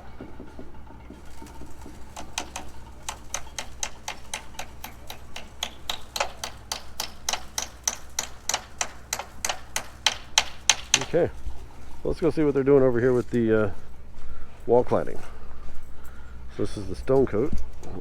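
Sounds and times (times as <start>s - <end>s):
hammer driving nails: 1.1s - 11.3s.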